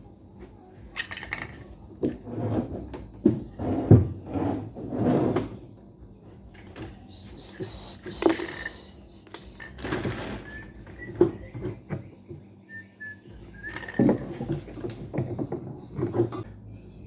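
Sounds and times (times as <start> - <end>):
machine parts clunking: 0.9 - 2.2.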